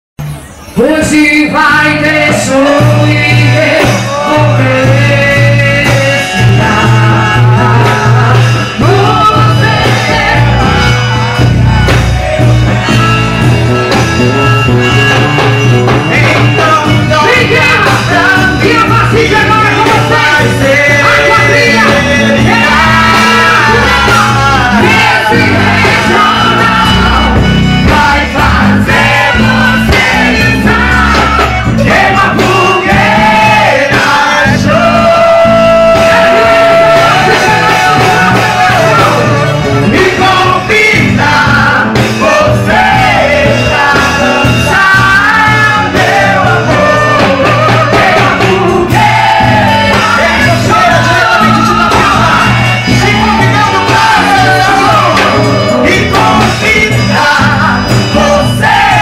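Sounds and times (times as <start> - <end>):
loud distorted live music: 0.2 - 59.0
person singing: 15.9 - 59.0.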